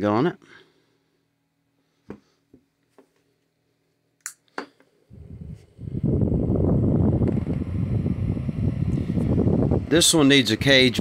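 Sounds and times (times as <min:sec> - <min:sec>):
desk fan spinning: 0:04.8 - 0:11.0
gusty air rumble on microphone: 0:05.1 - 0:11.0.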